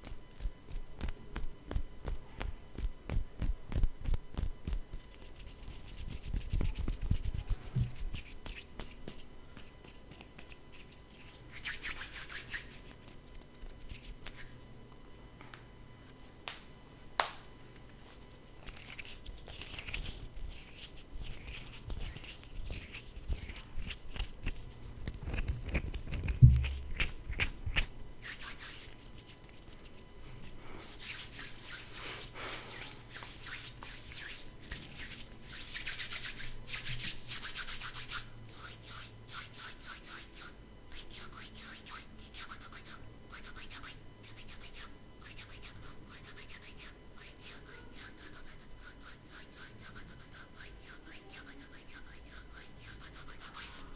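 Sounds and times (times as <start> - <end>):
hands rubbing together: 0.1 - 14.6, 18.0 - 53.9
low thump: 26.4 - 26.9.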